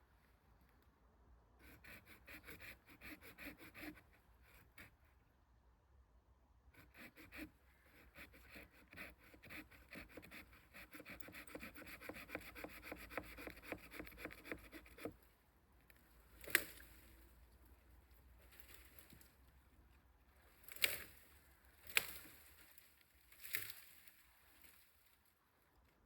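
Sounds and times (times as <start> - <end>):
rasping strokes on wood: 1.6 - 4.9, 6.8 - 15.2.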